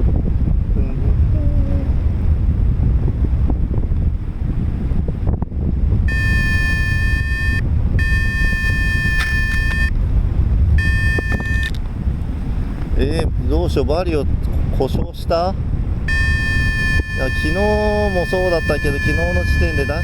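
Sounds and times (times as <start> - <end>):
wind rushing over microphone: 0.0 - 20.0
long electronic beeps: 6.1 - 9.9, 10.8 - 11.7, 16.1 - 20.0.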